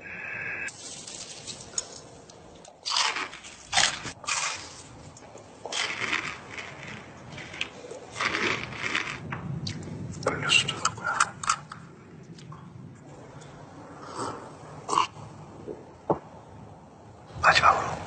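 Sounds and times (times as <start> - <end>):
crunching bites and chewing: 2.6 - 9.8.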